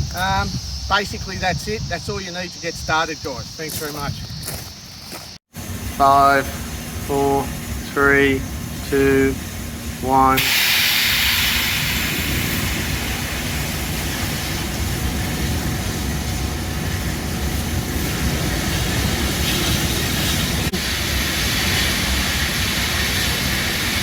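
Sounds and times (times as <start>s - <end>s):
gas flames rushing: 5.6s - 24.0s.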